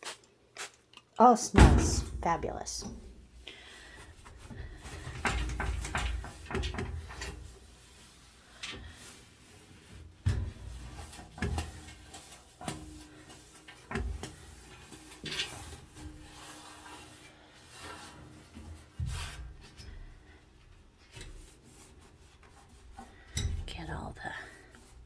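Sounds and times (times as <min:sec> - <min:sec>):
knocks against washing machine: 0:01.6 - 0:03.0, 0:04.9 - 0:07.3.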